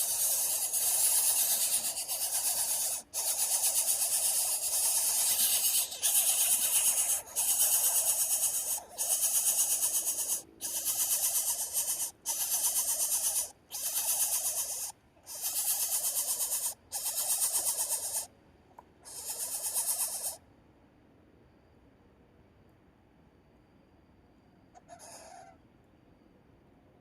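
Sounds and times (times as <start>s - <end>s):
bird rasping hiss: 0.0s - 18.3s, 19.0s - 20.4s.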